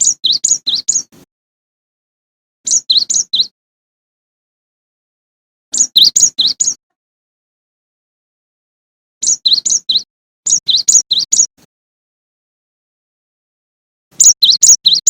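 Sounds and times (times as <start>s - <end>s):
bird singing ringing notes: 0.0s - 1.1s, 2.7s - 3.5s, 5.8s - 6.8s, 9.2s - 11.6s, 14.2s - 15.0s.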